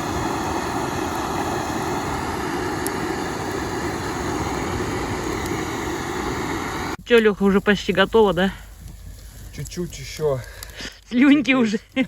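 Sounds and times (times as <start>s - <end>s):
rush of water: 0.0s - 7.0s
wind noise: 0.0s - 12.0s.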